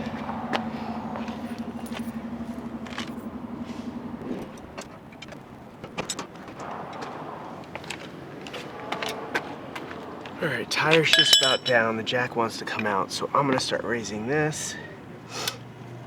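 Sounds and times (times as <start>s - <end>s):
car jack humming: 10.7s - 11.9s
metallic clicks and knocks: 11.1s - 11.8s.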